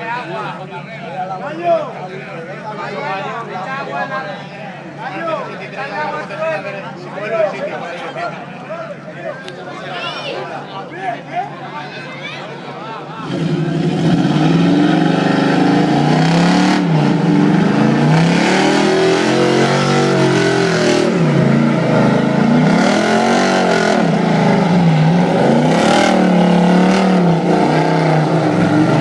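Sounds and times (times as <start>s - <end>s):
car engine revving hard: 13.2s - 29.0s.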